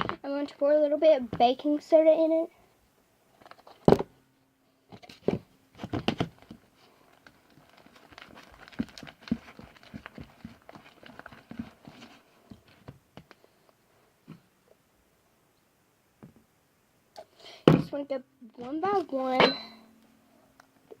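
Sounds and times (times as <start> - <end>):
slime squelching in a bowl: 7.6 - 12.2.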